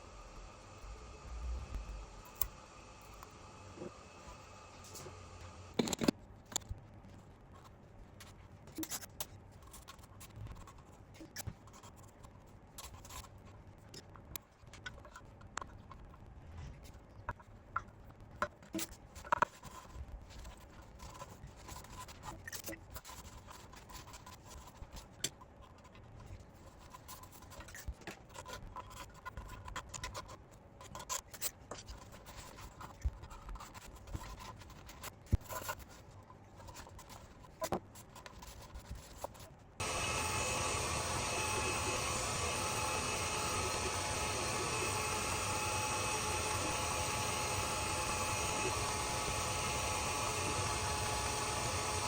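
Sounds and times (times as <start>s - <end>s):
low steady hum: 0.0s - 9.0s, 39.6s - 52.0s
hands working with tools: 4.9s - 6.7s, 18.4s - 52.0s.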